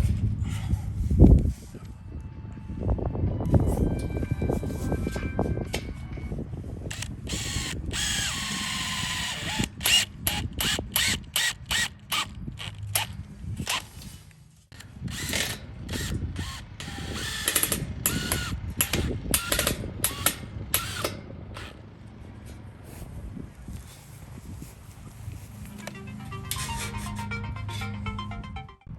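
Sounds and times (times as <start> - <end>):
drill driving screws into wood: 6.9 - 13.9, 14.8 - 21.8.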